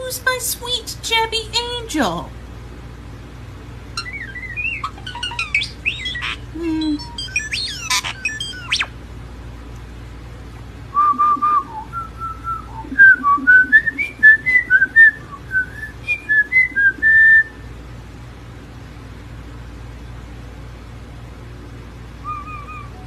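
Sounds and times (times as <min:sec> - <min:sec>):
steady low hum: 0:00.0 - 0:23.0
bird whistling a tune: 0:04.0 - 0:08.9, 0:11.0 - 0:17.6, 0:22.2 - 0:23.0.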